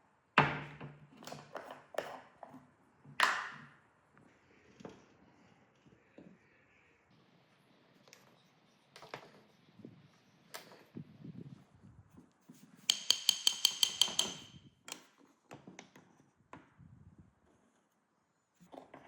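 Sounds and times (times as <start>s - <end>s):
hammer tapping on steel: 12.9s - 14.6s.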